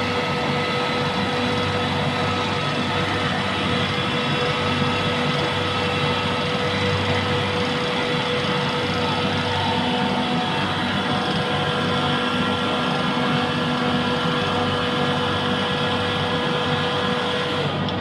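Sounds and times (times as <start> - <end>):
compressor droning with whine: 0.0 - 18.0.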